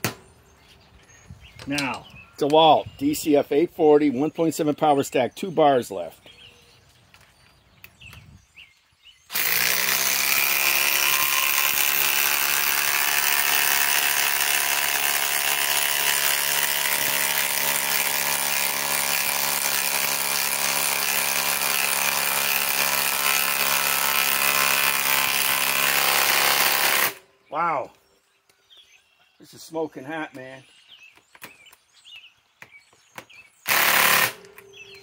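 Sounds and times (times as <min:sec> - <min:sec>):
impact driver hammering: 0:33.7 - 0:34.5.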